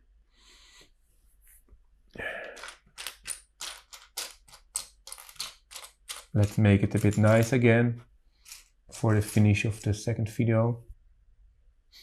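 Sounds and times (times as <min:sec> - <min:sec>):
plastic bricks clicking and rattling: 0:02.4 - 0:07.6, 0:08.4 - 0:09.9
plastic bricks rustling: 0:02.4 - 0:07.6.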